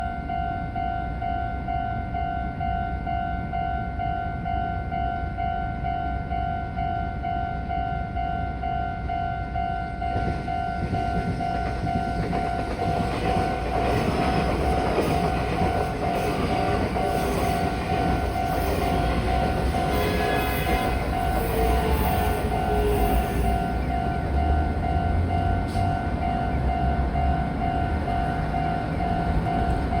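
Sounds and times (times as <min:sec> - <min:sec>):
low rumble of train: 0:00.0 - 0:30.0
level-crossing alarm chime: 0:09.7 - 0:30.0.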